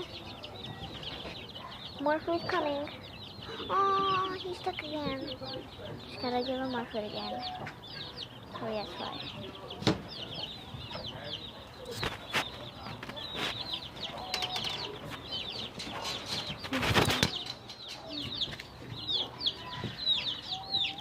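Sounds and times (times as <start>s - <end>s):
chicks peeping: 0.0s - 21.0s
wings flapping: 16.6s - 17.4s.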